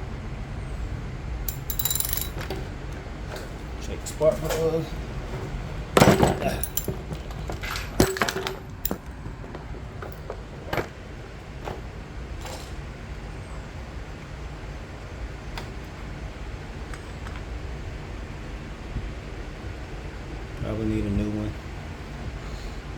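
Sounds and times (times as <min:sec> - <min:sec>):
metal hand tools clinking: 0:01.5 - 0:02.5, 0:06.0 - 0:09.1.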